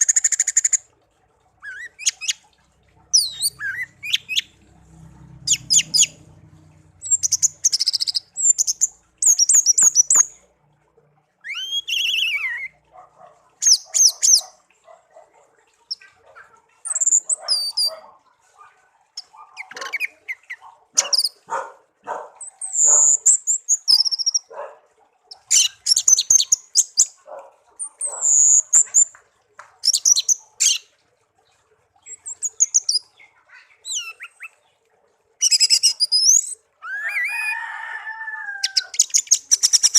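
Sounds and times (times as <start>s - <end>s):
songbird singing: 1.6s - 10.5s, 11.4s - 13.0s, 19.1s - 24.7s, 32.0s - 34.8s.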